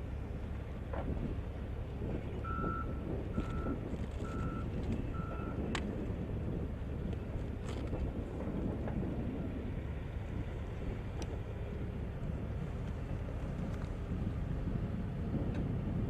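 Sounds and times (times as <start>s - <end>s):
low engine rumble: 0.0s - 16.0s
reversing alarm beeping: 2.4s - 4.6s, 5.2s - 5.6s.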